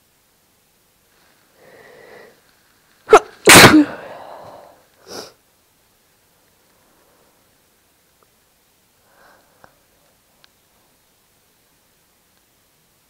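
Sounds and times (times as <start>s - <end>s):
person breathing: 1.5s - 2.4s, 3.8s - 5.4s, 9.0s - 10.0s
person sneezing: 3.1s - 5.4s.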